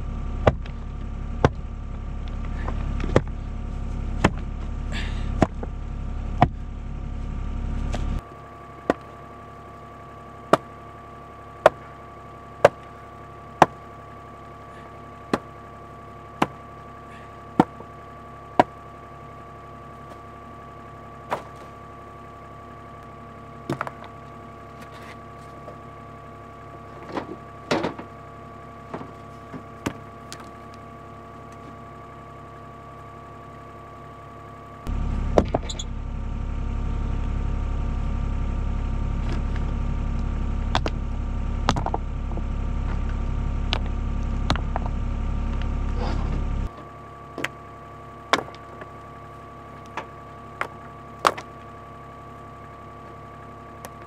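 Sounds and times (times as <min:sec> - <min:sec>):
excavator engine running: 0:00.0 - 0:54.0.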